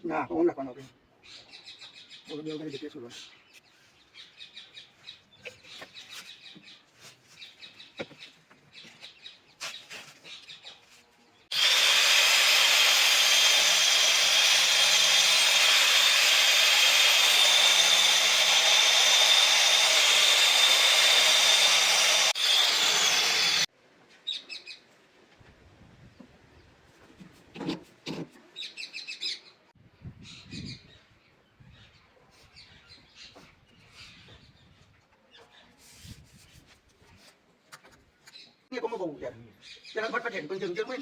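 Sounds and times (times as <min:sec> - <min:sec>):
handheld power tool running: 0:11.5 - 0:23.7.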